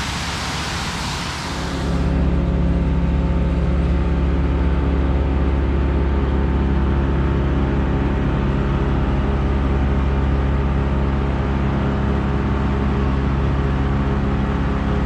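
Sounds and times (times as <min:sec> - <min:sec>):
waterfall rushing: 0:00.0 - 0:02.1.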